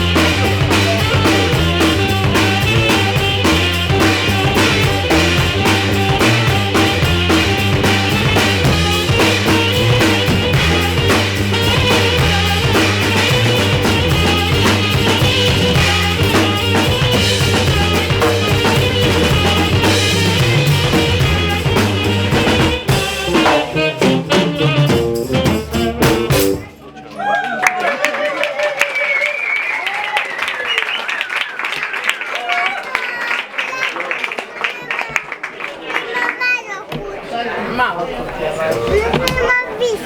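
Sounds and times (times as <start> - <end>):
sustained low bass notes: 0.0 - 26.8
drum kit beating: 0.0 - 26.9, 38.3 - 39.6.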